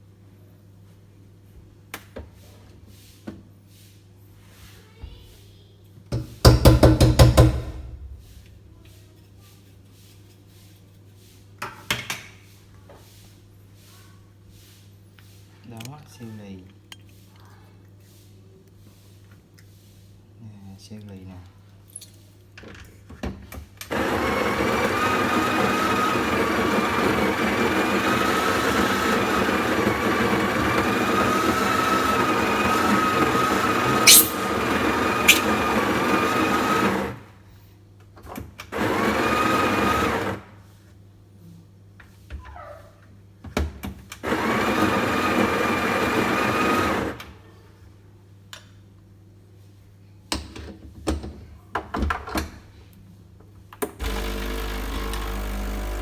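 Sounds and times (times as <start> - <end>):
sharp clicks: 34.1 - 34.4
electric motor appliance whining: 54.0 - 56.0.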